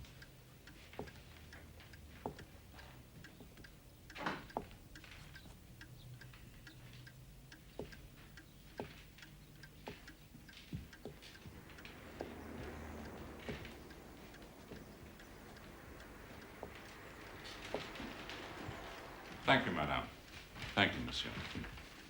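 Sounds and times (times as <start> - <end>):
clock ticking: 0.0 - 22.0
soft knocks: 9.9 - 19.5.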